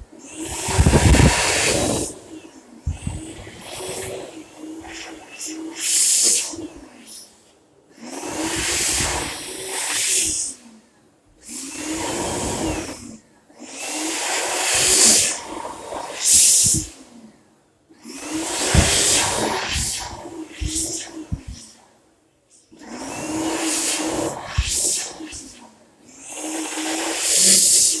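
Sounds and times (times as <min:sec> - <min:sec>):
hand dryer blowing: 0:00.0 - 0:07.0, 0:08.0 - 0:10.5, 0:11.5 - 0:13.1, 0:13.8 - 0:16.9, 0:18.1 - 0:21.6, 0:22.8 - 0:25.5, 0:26.4 - 0:28.0.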